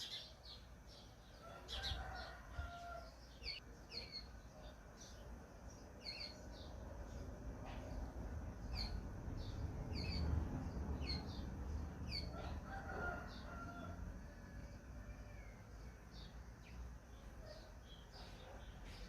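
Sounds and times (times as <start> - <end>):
small birds chirping: 0.0 - 14.0, 14.7 - 19.0
rooster crowing: 1.4 - 3.2, 12.2 - 15.8.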